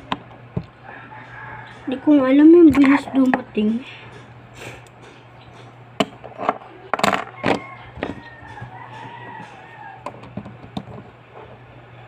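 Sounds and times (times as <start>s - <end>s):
rooster crowing: 0.8s - 2.4s, 7.2s - 10.4s.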